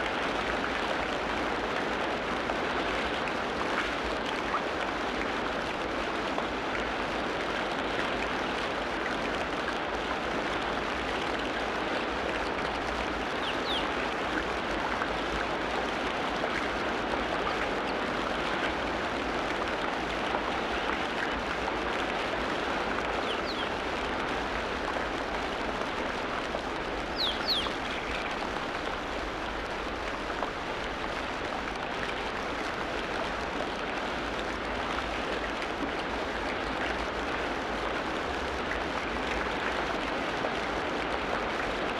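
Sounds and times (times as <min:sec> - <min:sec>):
running water: 0:00.0 - 0:41.9
bird chirps: 0:13.4 - 0:13.9, 0:23.2 - 0:23.7, 0:27.2 - 0:28.3.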